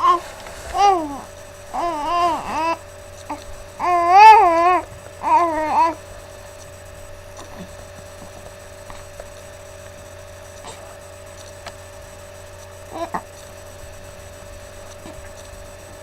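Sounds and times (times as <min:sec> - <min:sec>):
electrical hum: 0:00.0 - 0:16.0.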